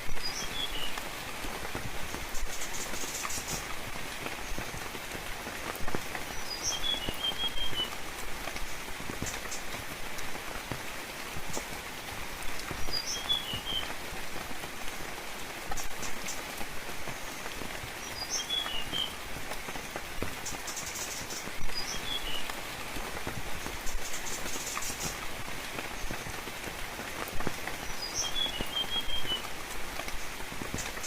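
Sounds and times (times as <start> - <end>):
gentle rain falling: 0.0 - 31.0
bird chirping: 27.9 - 29.4.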